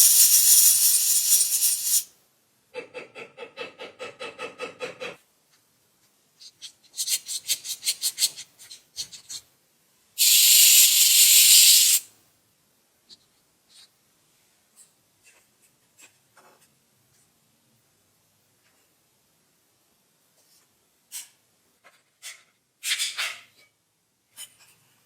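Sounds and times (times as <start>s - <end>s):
hand rubbing on a surface: 0.0s - 2.0s
loud steady hiss: 0.0s - 2.1s, 10.2s - 12.1s.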